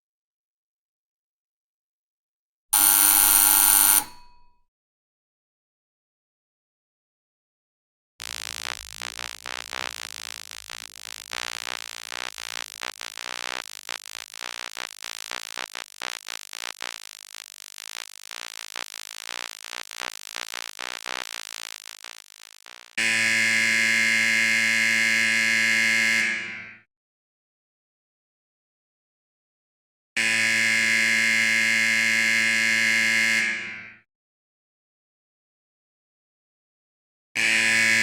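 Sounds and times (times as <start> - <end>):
pulsing electric buzz: 2.8 - 4.2, 8.2 - 24.3
harsh buzzer tone: 2.8 - 4.4, 8.2 - 26.8, 30.2 - 33.8, 37.4 - 38.0.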